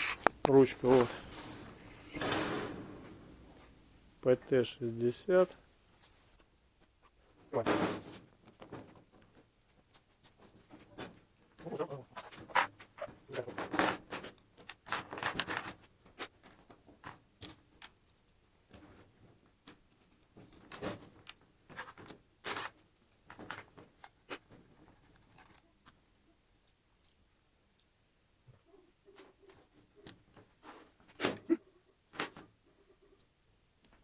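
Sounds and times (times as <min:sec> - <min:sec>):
hands handling torch and hose: 0:00.0 - 0:02.3.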